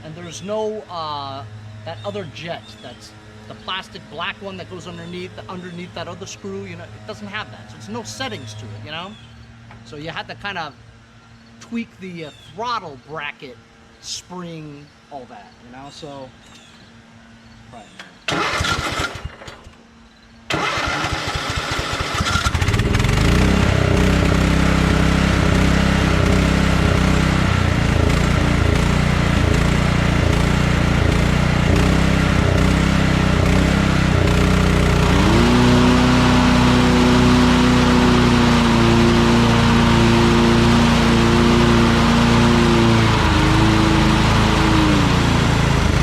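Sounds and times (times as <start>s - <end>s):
electric starter cranking: 18.2s - 19.8s, 20.5s - 46.0s
lawn tractor engine running: 18.3s - 19.7s, 20.5s - 46.0s.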